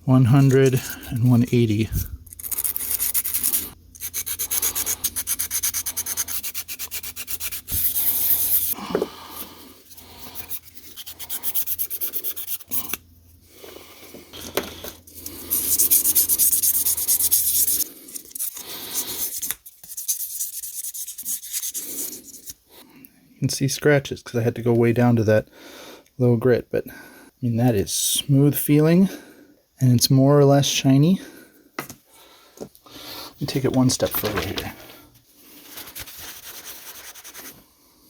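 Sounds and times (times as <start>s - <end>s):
sandpaper rubbing on steel: 0.3s - 8.8s, 10.1s - 13.0s, 15.2s - 22.6s, 35.7s - 37.6s.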